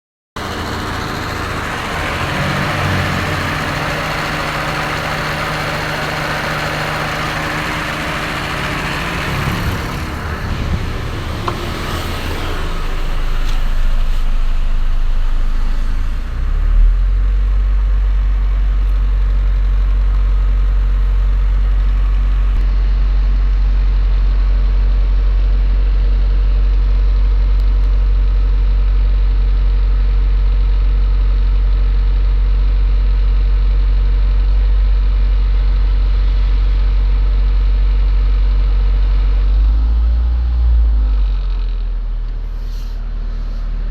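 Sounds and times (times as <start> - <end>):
car engine idling: 0.4 - 43.9.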